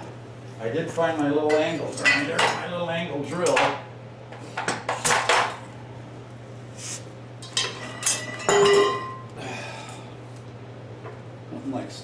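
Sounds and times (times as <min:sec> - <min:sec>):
ringing metal clank: 0:08.0 - 0:09.3.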